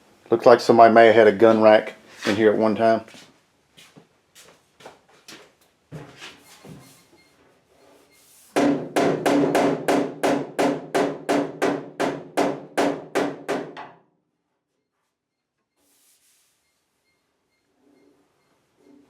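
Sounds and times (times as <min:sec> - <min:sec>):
hammer striking sheet metal: 0:08.6 - 0:13.9.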